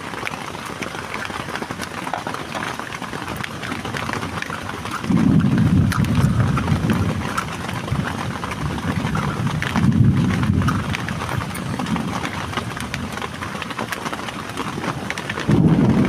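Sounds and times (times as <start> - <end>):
heavy rain falling: 0.0 - 16.0.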